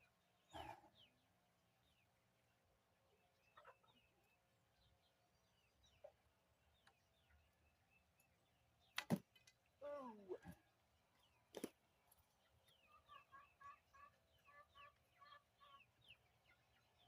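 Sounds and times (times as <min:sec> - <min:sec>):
faint bird chirps: 0:03.0 - 0:09.0.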